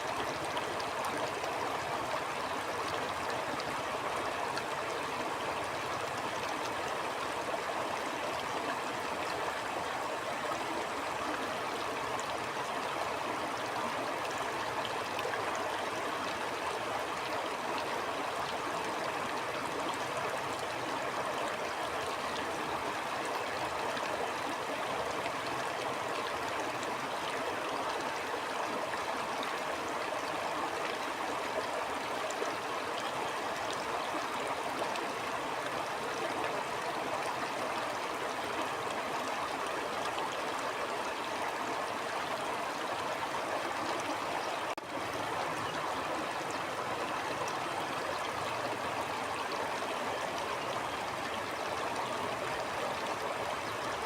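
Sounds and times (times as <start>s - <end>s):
stream water flowing: 0.0s - 54.0s.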